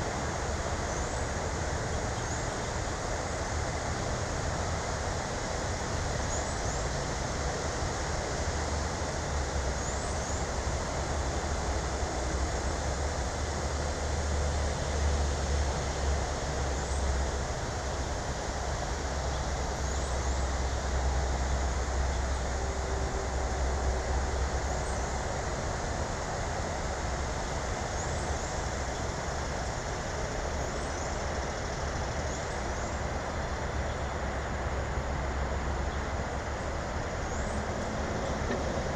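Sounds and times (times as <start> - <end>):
low rumble and hiss: 0.0 - 38.9
small birds chirping: 37.1 - 38.4.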